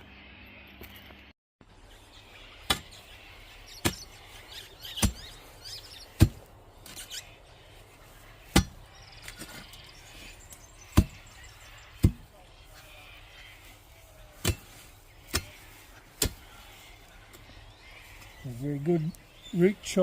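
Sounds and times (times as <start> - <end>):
birds chirping faintly: 0.0 - 20.0
digging tool chopping soil: 2.6 - 2.9, 3.8 - 4.1, 4.9 - 5.4, 6.1 - 7.0, 8.5 - 9.6, 10.8 - 12.3, 14.4 - 16.6.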